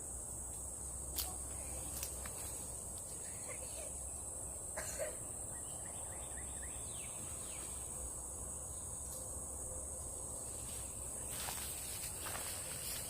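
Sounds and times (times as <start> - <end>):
rustle: 0.0 - 5.3, 6.1 - 13.0.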